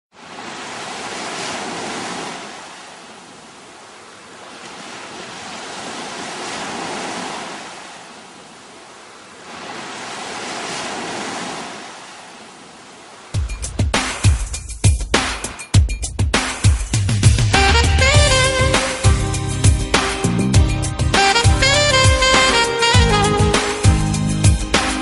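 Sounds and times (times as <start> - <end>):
sea waves breaking on shore: 0.1 - 14.6.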